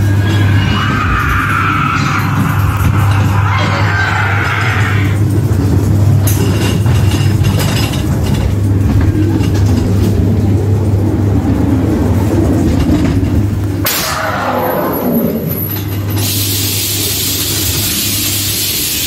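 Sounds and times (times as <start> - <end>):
ride car rumbling on track: 0.0 - 19.0
sharp crack: 13.8 - 14.7.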